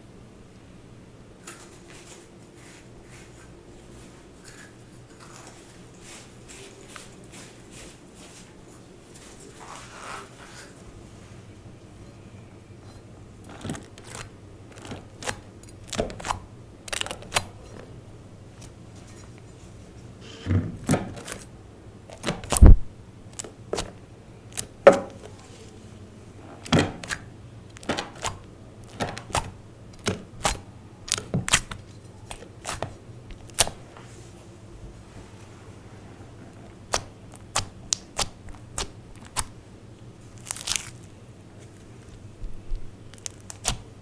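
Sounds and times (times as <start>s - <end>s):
slime squishing with air pops: 13.5s - 17.5s, 22.1s - 25.2s, 26.6s - 33.8s, 36.9s - 39.6s.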